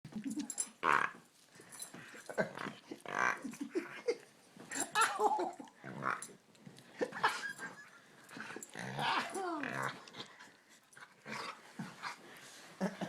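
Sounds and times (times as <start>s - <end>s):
dog croaking: 0.8s - 1.2s.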